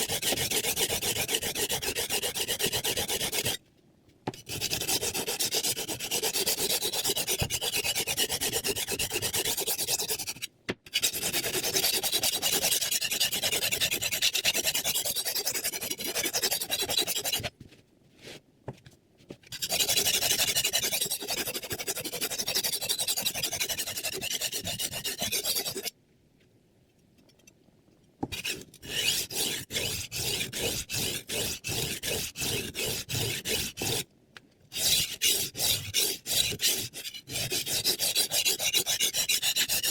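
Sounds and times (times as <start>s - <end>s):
knife rasping on sharpening plate: 34.8s - 39.9s.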